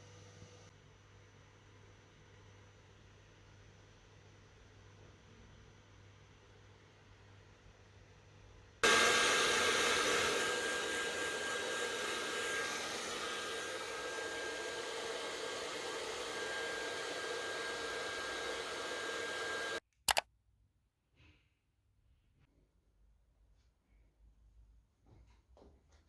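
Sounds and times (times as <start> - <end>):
small appliance motor whining: 8.8 - 19.8.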